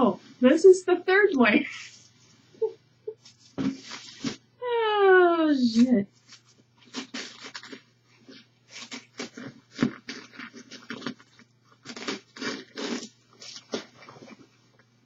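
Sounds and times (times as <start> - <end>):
plastic wrap crinkling and tearing: 6.2 - 14.4.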